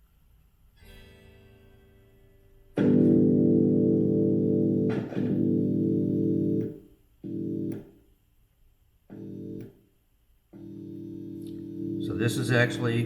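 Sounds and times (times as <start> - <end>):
electric guitar chord stuttering: 2.8 - 7.8, 9.1 - 9.6, 10.6 - 13.0.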